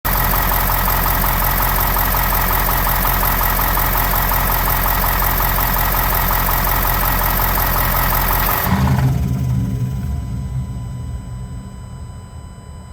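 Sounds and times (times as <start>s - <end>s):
fast mechanical ticking: 0.0s - 10.0s
vehicle low hum: 0.0s - 12.5s.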